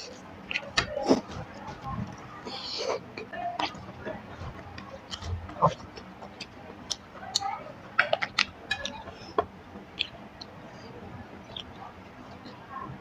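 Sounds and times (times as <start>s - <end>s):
chewing with mouth clicks: 0.4s - 10.6s
lip smacks: 10.0s - 10.6s.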